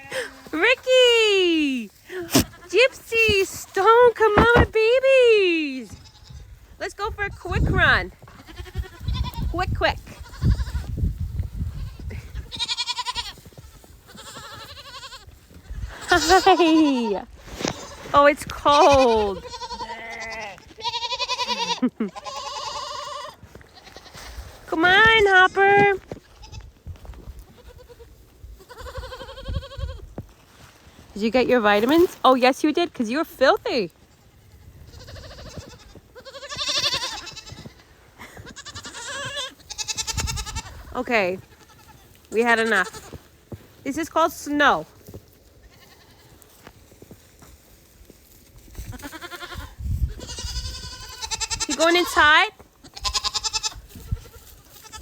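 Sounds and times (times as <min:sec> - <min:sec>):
young goats bleating: 0:00.0 - 0:24.2, 0:24.8 - 0:26.7, 0:27.4 - 0:30.1, 0:34.0 - 0:43.3, 0:45.6 - 0:46.6, 0:48.8 - 0:55.0
low thuds and scuffling: 0:02.4 - 0:04.8.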